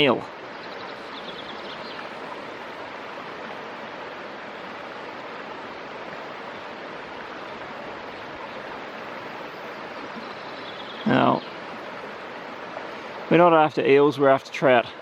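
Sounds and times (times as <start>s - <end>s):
small stream rushing: 0.0s - 15.0s.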